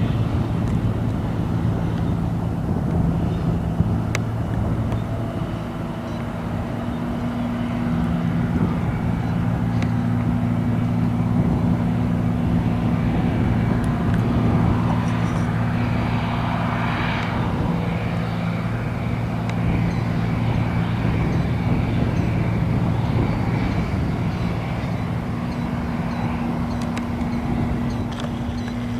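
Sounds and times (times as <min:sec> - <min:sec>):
propeller airplane engine drone: 0:00.0 - 0:28.9.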